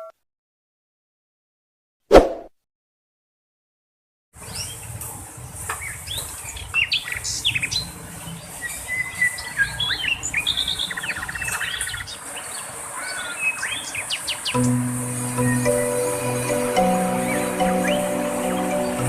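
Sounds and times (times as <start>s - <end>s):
background music: 14.6s - 19.0s
canary singing: 14.6s - 19.0s.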